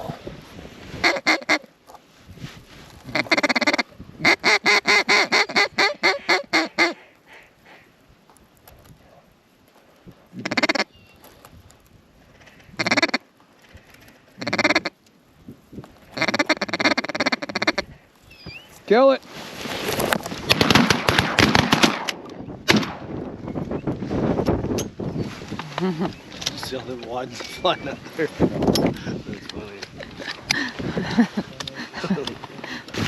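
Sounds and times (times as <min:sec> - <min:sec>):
duck quacking: 0:03.1 - 0:07.0, 0:10.4 - 0:10.9, 0:12.8 - 0:13.2, 0:14.4 - 0:14.9, 0:16.2 - 0:17.9.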